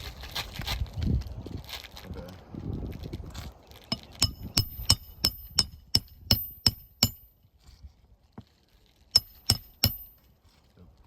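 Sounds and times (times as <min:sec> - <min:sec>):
hammer striking nail: 0:03.9 - 0:07.4, 0:09.2 - 0:10.2.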